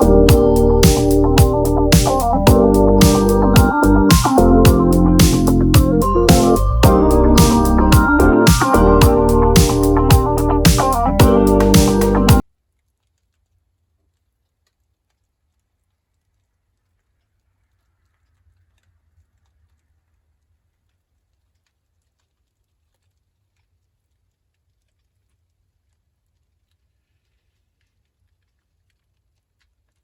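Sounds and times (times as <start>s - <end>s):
background music: 0.0s - 12.4s.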